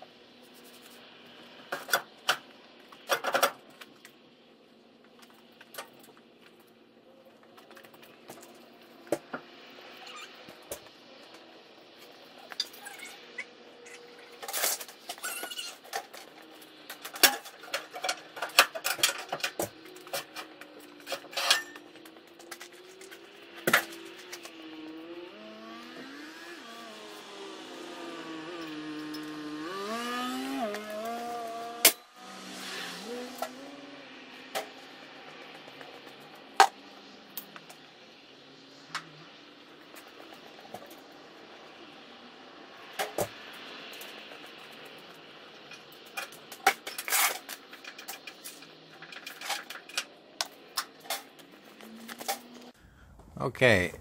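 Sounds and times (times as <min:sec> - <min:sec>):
hand tools clanking on metal: 0:16.9 - 0:22.8.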